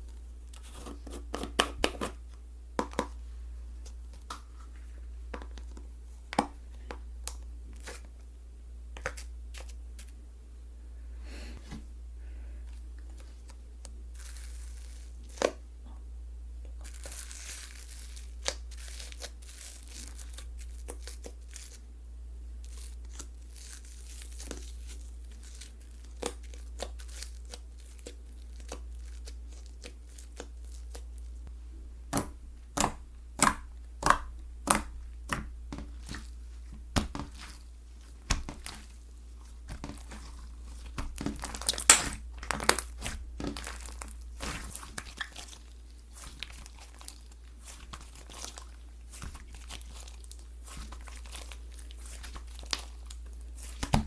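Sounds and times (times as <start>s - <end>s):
slime crackling: 13.0s - 15.6s, 16.7s - 21.8s, 22.6s - 54.0s
slime clicks and pops: 41.6s - 42.8s.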